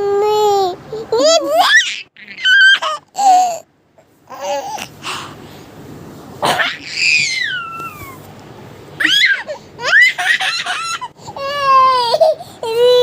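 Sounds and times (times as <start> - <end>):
baby squealing: 1.4 - 3.6, 6.5 - 8.2, 9.0 - 12.0
baby babbling: 4.3 - 4.9.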